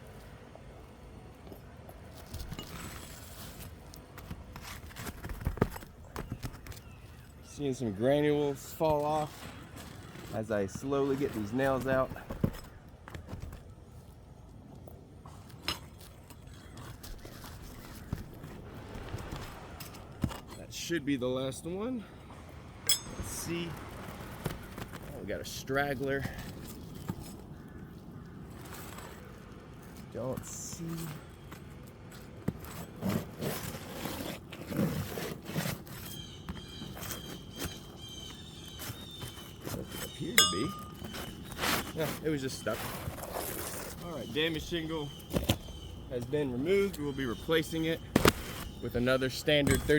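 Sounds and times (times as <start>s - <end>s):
roofing tools scraping shingles: 2.2s - 13.6s, 28.6s - 49.9s
metal tool clicks and knocks: 22.9s - 23.3s
thin high tone: 22.9s - 23.8s, 40.4s - 41.1s.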